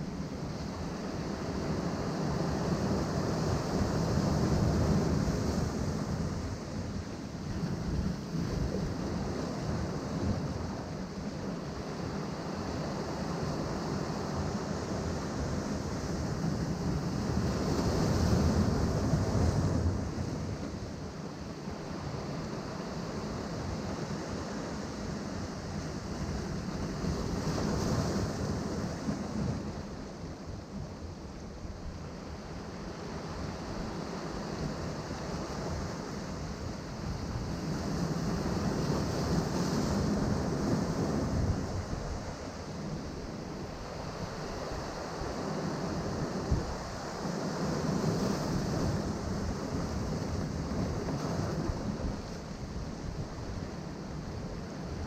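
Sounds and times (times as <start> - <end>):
wind on microphone: 31.7 - 55.0
sea surf breaking among rocks: 32.5 - 55.0.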